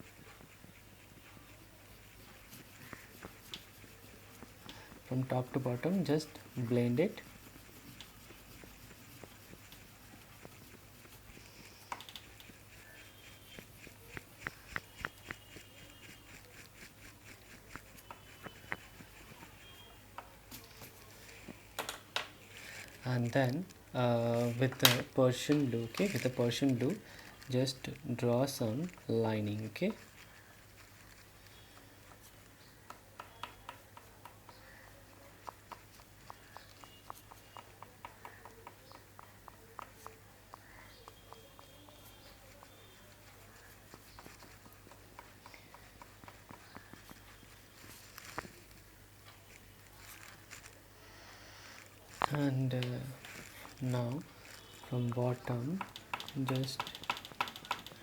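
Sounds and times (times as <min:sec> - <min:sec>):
oil pastel tapping on paper: 0:02.4 - 0:05.1, 0:06.4 - 0:23.0, 0:29.6 - 0:48.6, 0:54.4 - 0:58.0.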